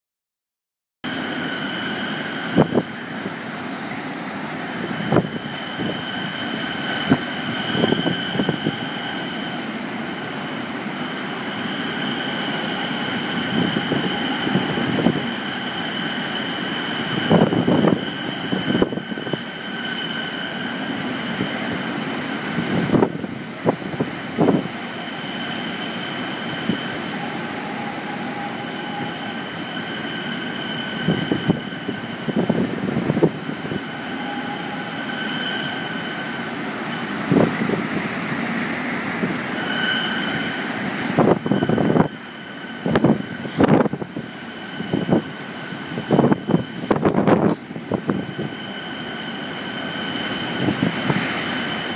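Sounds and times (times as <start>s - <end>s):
high whistling tones: 1.1s - 3.6s, 4.7s - 51.9s
strong wind blowing: 1.1s - 51.9s
wind buffeting microphone: 2.0s - 3.6s, 4.5s - 9.3s, 12.1s - 20.0s, 20.9s - 25.0s, 30.8s - 35.8s, 37.0s - 39.5s, 40.3s - 48.8s, 50.2s - 51.9s.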